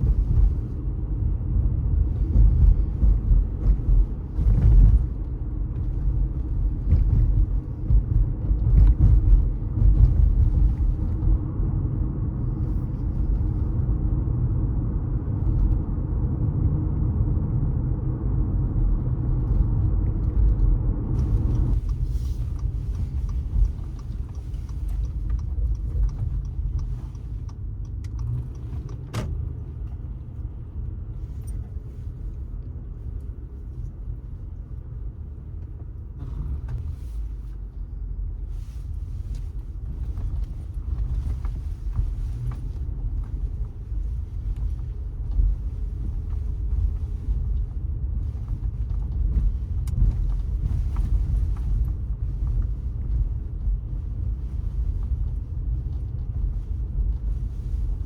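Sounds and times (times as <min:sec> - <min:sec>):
low rumble of engine and road: 0:00.0 - 0:58.0.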